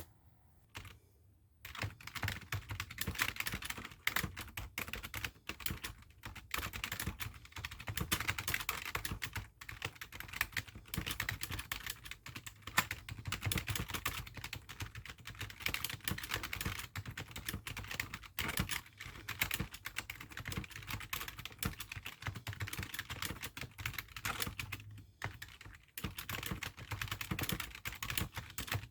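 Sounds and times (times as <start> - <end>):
computer keyboard typing: 0.8 - 1.0, 1.7 - 28.9.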